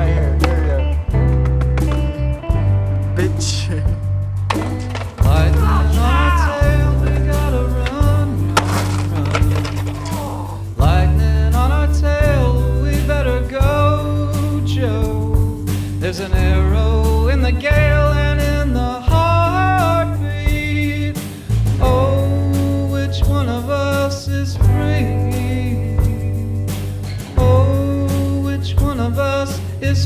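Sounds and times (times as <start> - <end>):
song with heavy pulsing bass: 0.0 - 23.6
drum hits: 0.0 - 23.8, 24.6 - 29.8
bending singing-like melody: 0.0 - 30.0.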